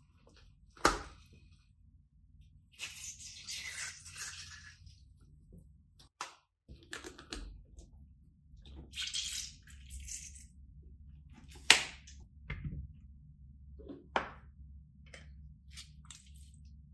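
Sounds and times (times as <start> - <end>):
wet squishing: 2.7 - 5.3, 8.6 - 10.5, 15.6 - 16.7.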